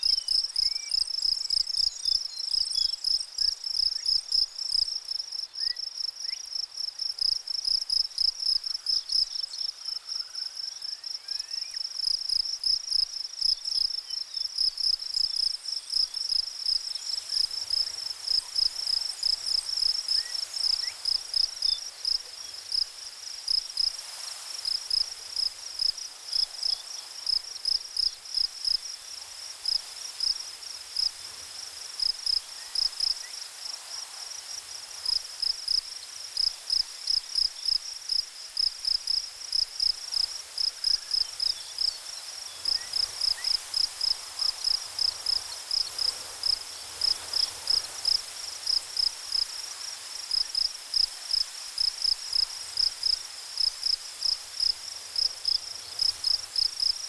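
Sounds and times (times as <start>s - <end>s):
faint steady hiss: 0.0s - 57.0s
insect chirping: 0.0s - 57.0s.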